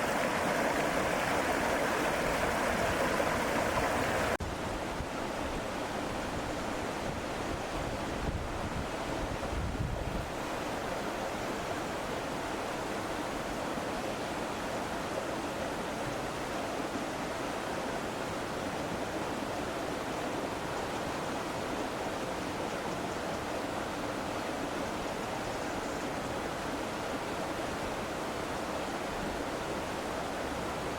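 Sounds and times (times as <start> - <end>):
stream over small waterfall: 0.0 - 30.9
wind buffeting microphone: 6.2 - 10.3.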